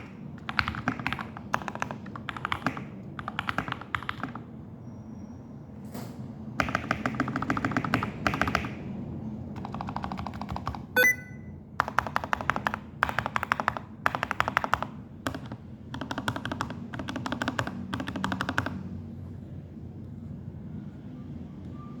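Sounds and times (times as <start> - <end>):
mechanical keyboard typing: 0.0 - 4.5, 6.6 - 8.8, 9.6 - 18.8
sharp ringing click: 11.0 - 11.4.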